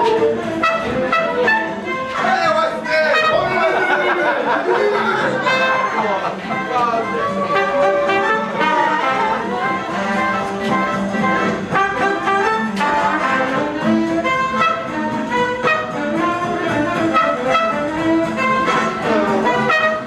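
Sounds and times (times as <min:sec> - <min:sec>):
brass-led dance-band jazz: 0:00.0 - 0:20.0.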